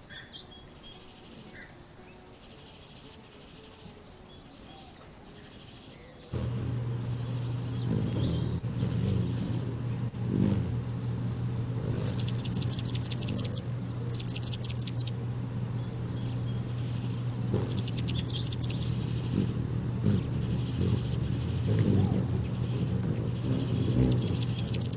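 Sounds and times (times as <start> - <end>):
hummingbirds chittering: 2.1 - 24.9
steady low hum: 6.4 - 24.9.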